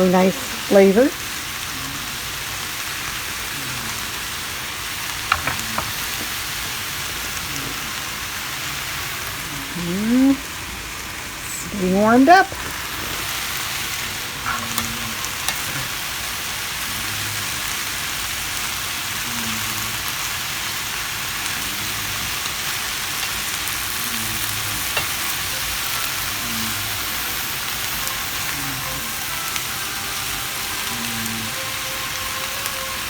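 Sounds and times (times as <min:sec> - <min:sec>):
vegetables sizzling in a frying pan: 0:00.0 - 0:33.0.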